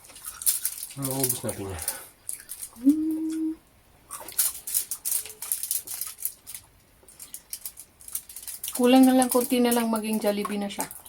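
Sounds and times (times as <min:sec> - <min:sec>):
crunchy chewing of fried food: 0:00.0 - 0:02.8, 0:04.0 - 0:09.3.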